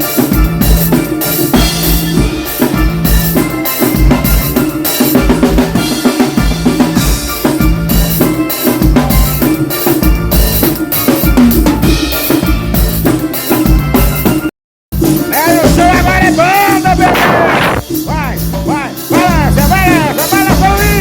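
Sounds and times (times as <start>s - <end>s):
drum kit groove: 0.0s - 21.0s
sustained bass notes: 14.9s - 21.0s.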